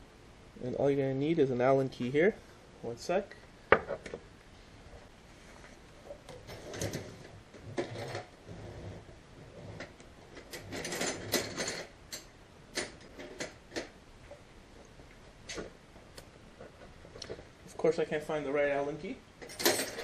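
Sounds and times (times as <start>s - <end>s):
metal tools clinking and rattling: 9.6s - 13.9s, 19.4s - 20.0s.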